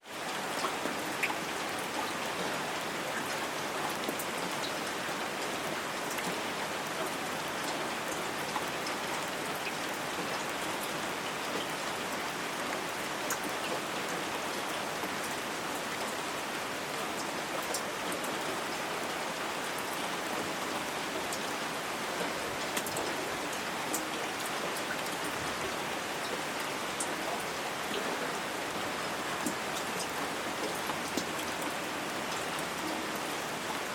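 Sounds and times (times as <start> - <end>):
light rain falling: 0.0 - 33.9
raindrop ticks: 22.2 - 23.1.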